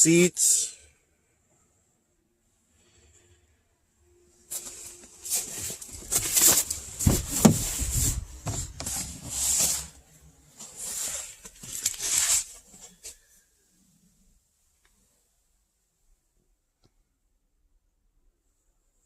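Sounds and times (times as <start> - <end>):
rustling handling noises: 4.4 - 13.4
dull bumps: 6.0 - 9.2.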